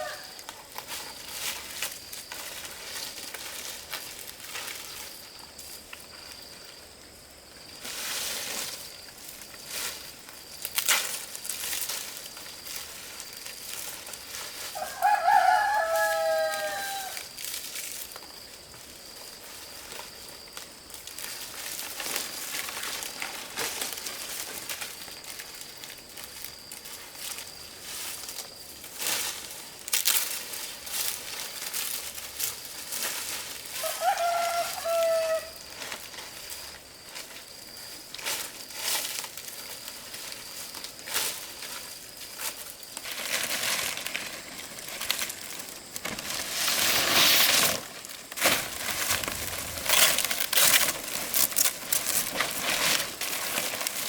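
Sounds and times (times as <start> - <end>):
rooster crowing: 0.0 - 0.4, 14.7 - 17.3, 33.7 - 35.6.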